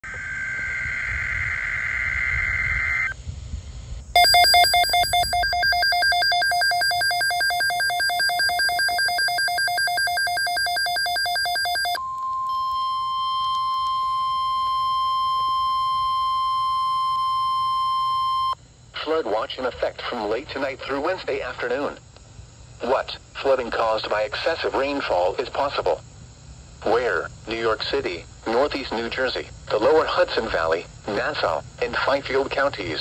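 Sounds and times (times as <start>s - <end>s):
rapidly pulsing alarm beeping: 4.2s - 18.6s
steady single-pitch attention tone: 4.2s - 18.6s.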